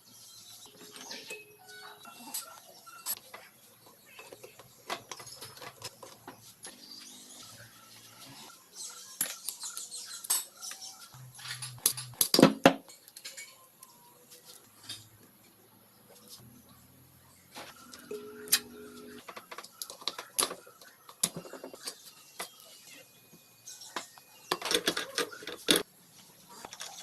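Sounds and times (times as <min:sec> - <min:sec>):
metal tools clinking and tapping: 0:00.7 - 0:02.4, 0:04.1 - 0:06.8, 0:09.2 - 0:13.8.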